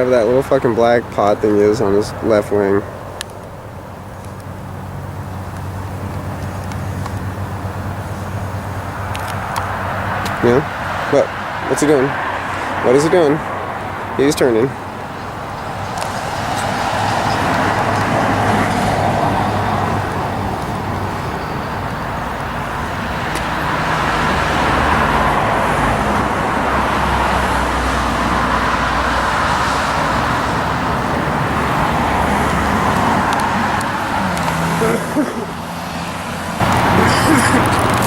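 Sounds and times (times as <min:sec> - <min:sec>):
low engine hum: 0:00.0 - 0:38.0
propeller airplane droning overhead: 0:00.0 - 0:38.0.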